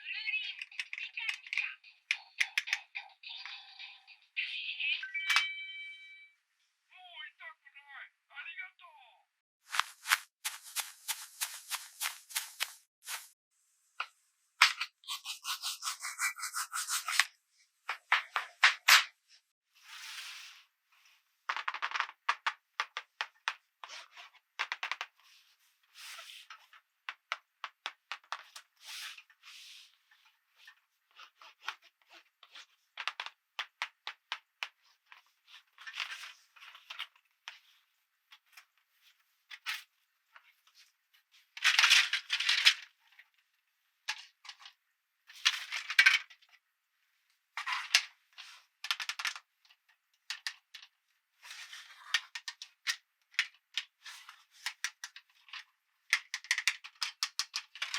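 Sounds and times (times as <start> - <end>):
plastic toy pieces clicking: 0.4 - 3.0, 48.8 - 49.4, 52.1 - 53.9, 56.1 - 57.9
rustling scrapes: 9.6 - 13.4, 15.1 - 17.3, 19.7 - 21.1.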